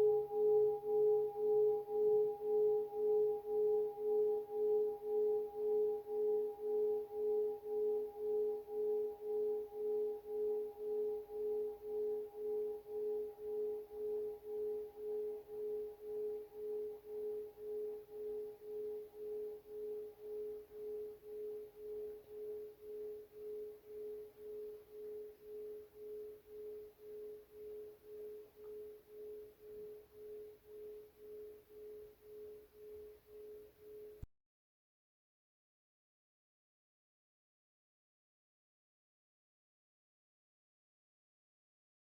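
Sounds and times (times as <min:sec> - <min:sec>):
meditation bell ringing: 0:00.0 - 0:34.0.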